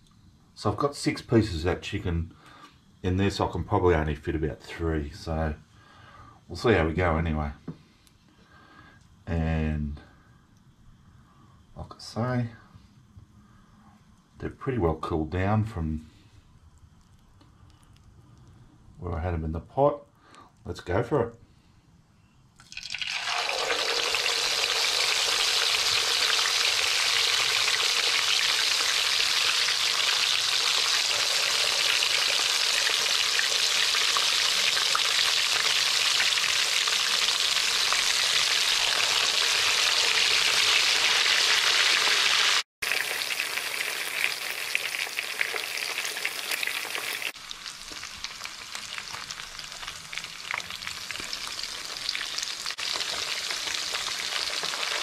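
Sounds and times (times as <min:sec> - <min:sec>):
chicken sizzling in hot oil: 0:22.6 - 0:55.0.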